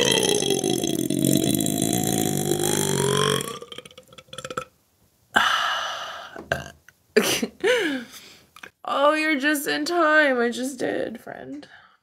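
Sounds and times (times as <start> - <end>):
person burping: 0.0 - 4.7, 6.4 - 7.5.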